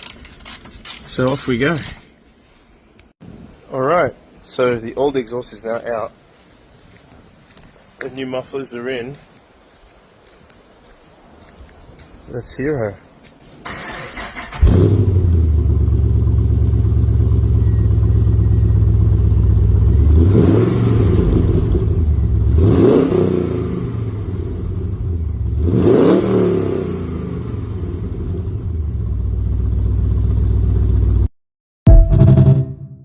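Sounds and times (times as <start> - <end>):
car engine idling and revving: 14.4 - 31.3.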